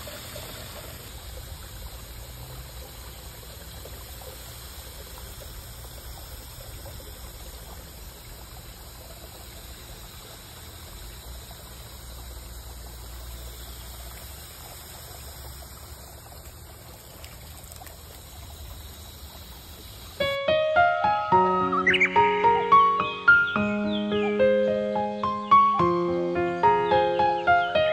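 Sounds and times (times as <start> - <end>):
water trickling in a pond: 0.0 - 20.4.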